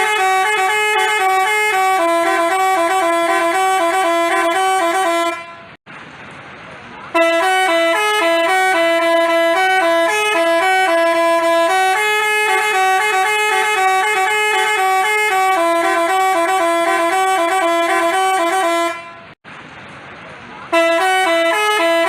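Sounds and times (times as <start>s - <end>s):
bus horn playing melody: 0.0s - 5.8s, 7.1s - 19.4s, 20.7s - 22.0s.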